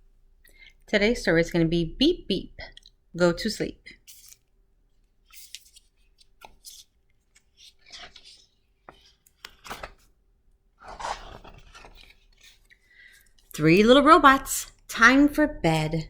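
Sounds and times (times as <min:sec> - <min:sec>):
paper rustling: 0:04.1 - 0:10.2, 0:10.8 - 0:13.5.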